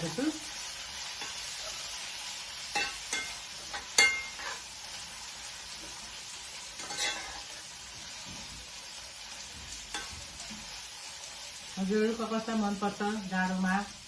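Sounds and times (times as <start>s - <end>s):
garlic sizzling in hot ghee: 0.0s - 14.0s
utensil scraping a pan: 2.8s - 4.7s, 6.8s - 7.7s.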